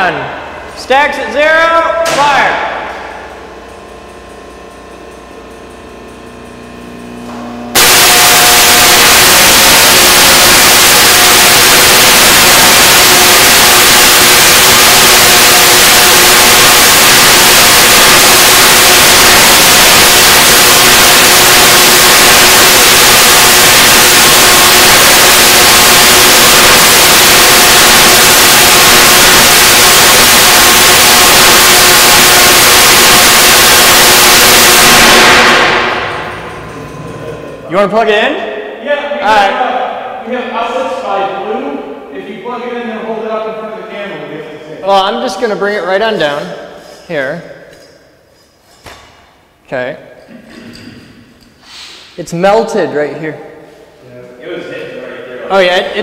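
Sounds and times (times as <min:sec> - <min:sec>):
low hum: 0:02.0 - 0:37.8
tesla coil arcing discharge: 0:02.1 - 0:37.7.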